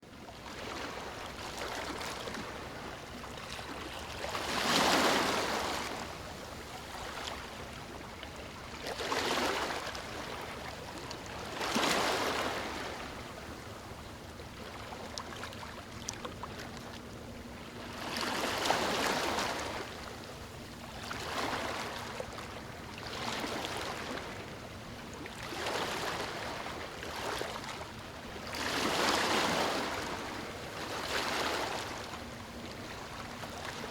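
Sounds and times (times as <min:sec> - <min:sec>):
ocean waves washing onto shore: 0:03.7 - 0:07.4.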